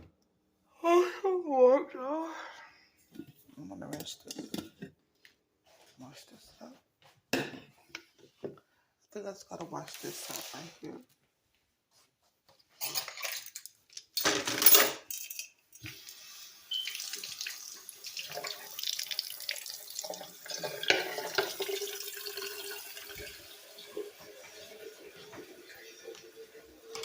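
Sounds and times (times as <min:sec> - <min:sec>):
tap water running into sink: 0:15.8 - 0:27.0.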